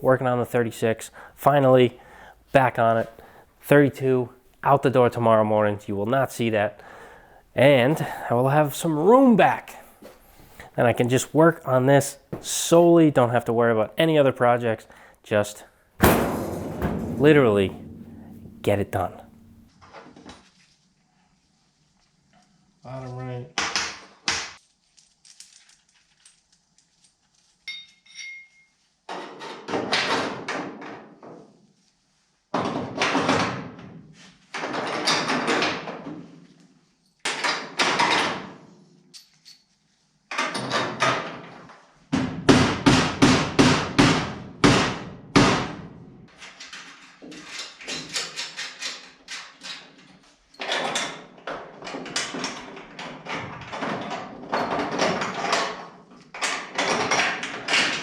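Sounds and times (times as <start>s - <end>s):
hammer striking sheet steel: 16.0s - 19.7s.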